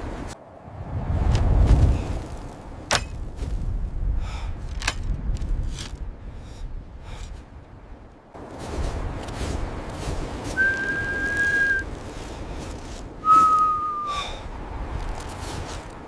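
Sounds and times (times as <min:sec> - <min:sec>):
long whistled notes: 0:10.6 - 0:11.8, 0:13.2 - 0:14.2.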